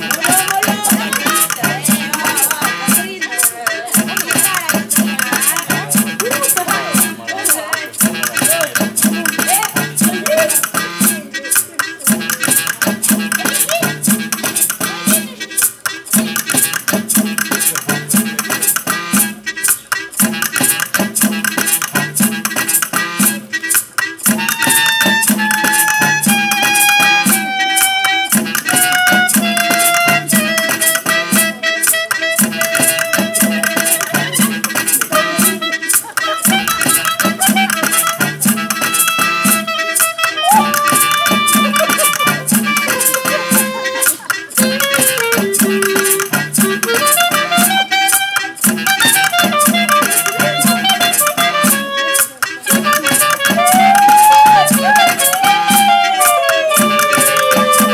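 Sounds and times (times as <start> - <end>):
steady low beat: 0.0 - 57.9
held descending melody: 49.6 - 57.9.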